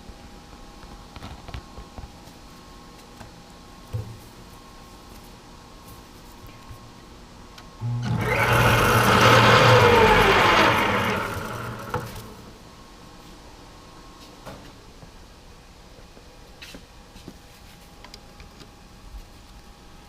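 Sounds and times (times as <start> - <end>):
power tool motor whirring: 7.8 - 12.5.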